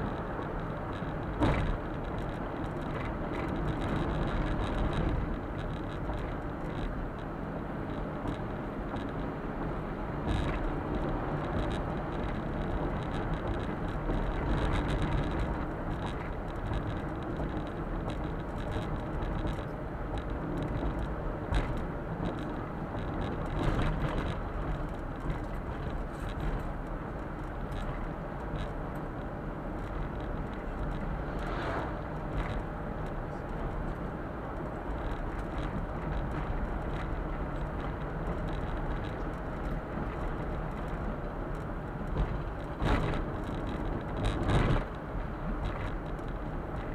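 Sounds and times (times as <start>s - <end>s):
small truck engine hum: 0.0s - 46.9s
tyre and road noise: 0.0s - 46.9s
knocks and rattles from bumps: 0.6s - 7.0s.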